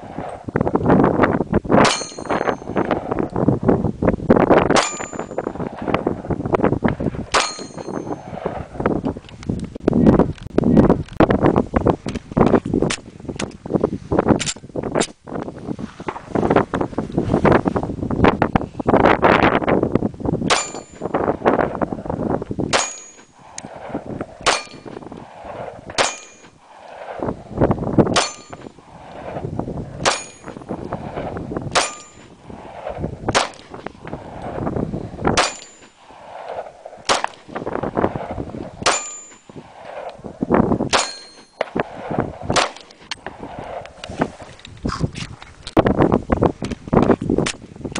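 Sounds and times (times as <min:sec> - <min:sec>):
metallic ring of steel targets: 0:01.8 - 0:03.0, 0:04.8 - 0:05.5, 0:07.3 - 0:08.3, 0:20.5 - 0:21.2, 0:22.7 - 0:23.4, 0:24.4 - 0:25.0, 0:26.0 - 0:26.6, 0:28.1 - 0:28.8, 0:30.0 - 0:30.7, 0:31.7 - 0:32.4, 0:35.4 - 0:36.0, 0:38.8 - 0:39.5, 0:40.9 - 0:41.7
pistol shots: 0:22.7 - 0:26.5, 0:28.1 - 0:29.3, 0:31.7 - 0:32.3, 0:33.3 - 0:33.8, 0:35.3 - 0:36.1, 0:37.0 - 0:37.6, 0:38.2 - 0:39.5, 0:40.9 - 0:42.9.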